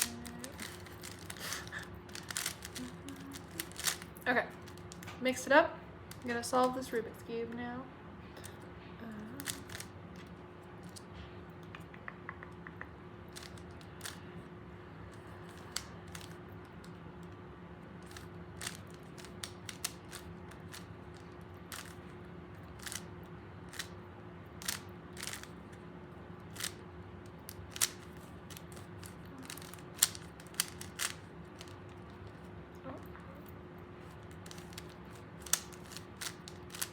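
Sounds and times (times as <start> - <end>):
plastic puzzle cube clicking: 0.0 - 5.0, 9.4 - 9.9, 13.3 - 14.2, 15.5 - 16.4, 18.0 - 22.0, 22.8 - 23.1, 23.7 - 23.9, 24.6 - 25.5, 26.5 - 26.8, 27.5 - 31.8, 34.4 - 36.9
steady low hum: 0.0 - 36.9.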